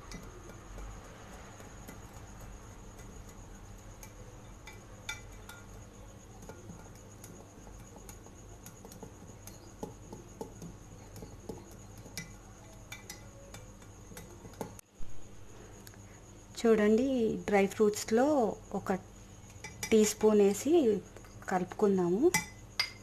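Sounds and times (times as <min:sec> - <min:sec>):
utensil clinking against glass bowl: 0:11.4 - 0:14.8, 0:19.6 - 0:20.1, 0:22.3 - 0:23.0.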